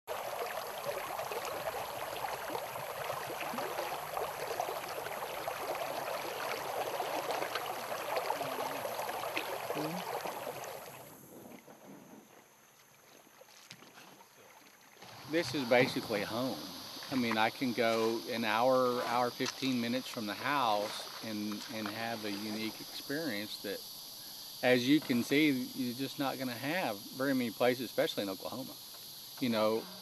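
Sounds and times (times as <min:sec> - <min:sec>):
river water flowing: 0:00.1 - 0:11.2, 0:14.5 - 0:23.4.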